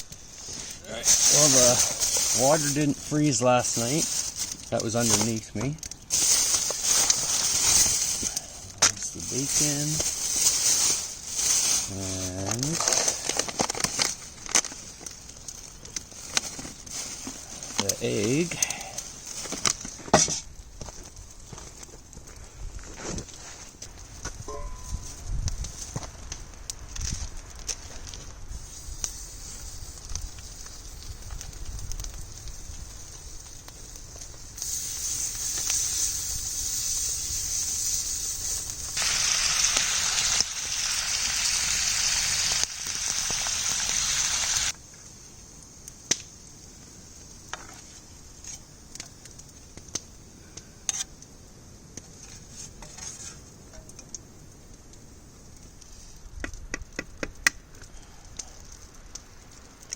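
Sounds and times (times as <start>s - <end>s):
bacon and egg sizzling in a pan: 0.0s - 20.4s, 27.8s - 51.1s
campfire crackling and popping: 0.0s - 59.9s.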